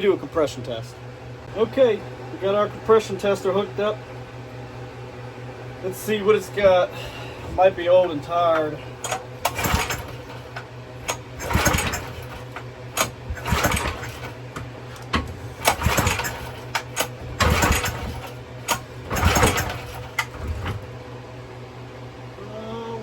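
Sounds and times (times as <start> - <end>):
recoil starter pulls cranking engine: 6.3 - 21.0.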